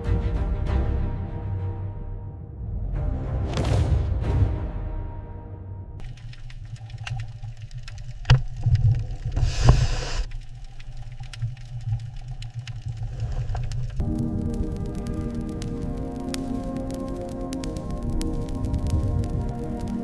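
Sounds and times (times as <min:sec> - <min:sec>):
clicks: 0:06.0 - 0:14.2
hissing rush: 0:06.0 - 0:20.0
low underwater rumble: 0:06.0 - 0:20.0.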